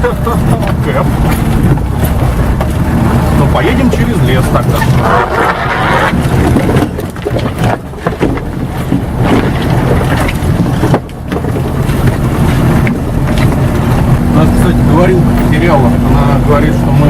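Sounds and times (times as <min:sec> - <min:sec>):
car engine running: 0:00.0 - 0:17.0
car body knocks and rattles: 0:06.1 - 0:14.2.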